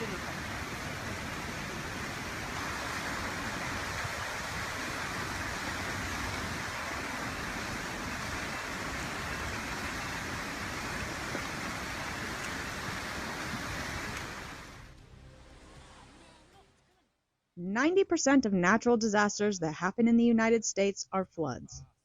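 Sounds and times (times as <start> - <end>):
flood water rushing: 0.0 - 15.0.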